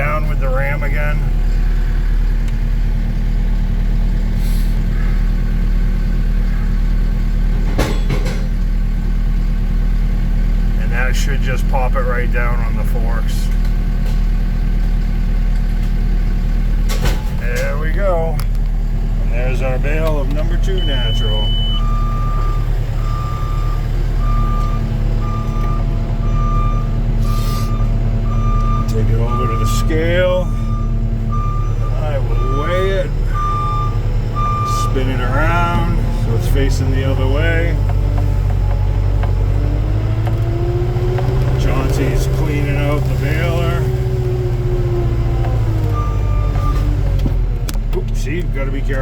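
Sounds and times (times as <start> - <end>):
forklift engine rumble: 0.0 - 49.0
forklift backup alarm beeping: 19.5 - 47.2.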